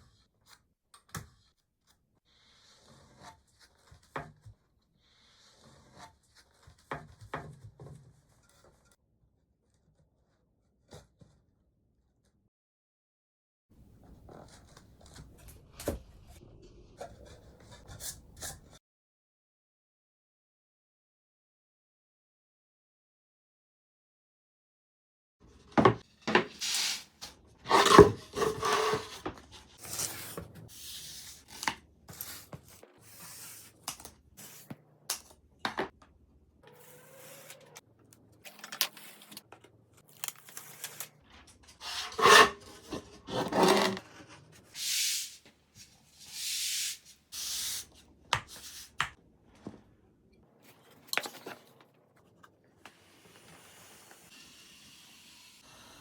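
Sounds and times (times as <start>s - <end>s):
rasping strokes: 41.8s - 44.0s.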